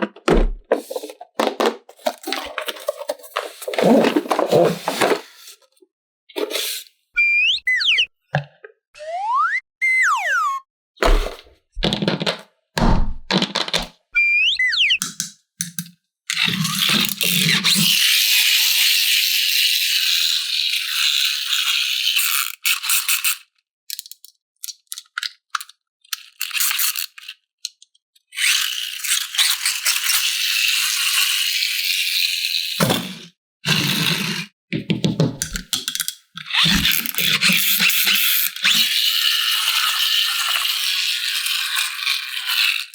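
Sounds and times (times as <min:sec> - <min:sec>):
loose parts knocking and rattling: 0:00.0 - 0:05.2
packaging crinkling and rustling: 0:00.1 - 0:05.6
whistle-like sliding sound effect: 0:07.2 - 0:08.1, 0:09.0 - 0:10.7, 0:14.2 - 0:15.0.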